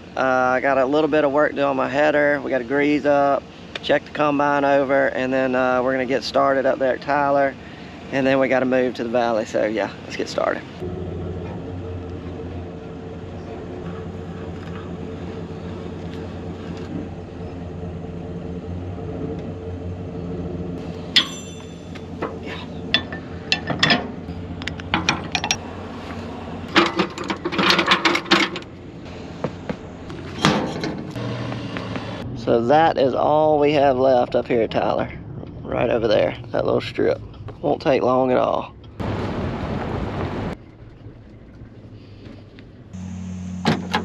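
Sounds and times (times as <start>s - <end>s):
vehicle engine running: 9.3s - 32.7s, 39.0s - 44.0s
metallic clinks and clanks: 20.8s - 25.7s.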